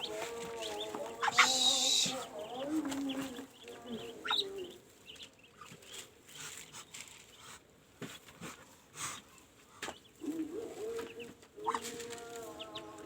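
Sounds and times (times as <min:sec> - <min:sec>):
duckling peeping: 0:00.0 - 0:07.6, 0:09.0 - 0:13.0.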